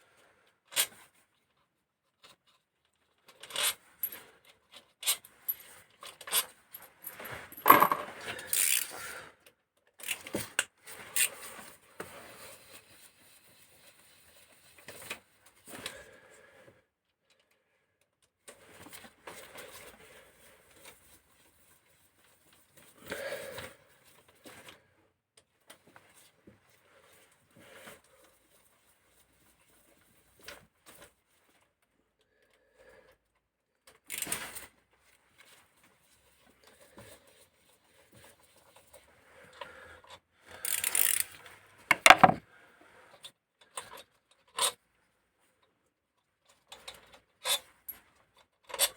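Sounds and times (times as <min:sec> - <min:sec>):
metal tools clinking and scraping: 0:06.3 - 0:09.0.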